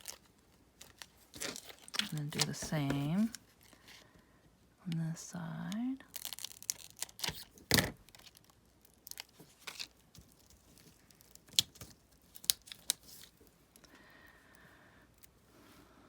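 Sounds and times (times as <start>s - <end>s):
paper rustling: 0.0s - 4.0s, 9.1s - 13.5s.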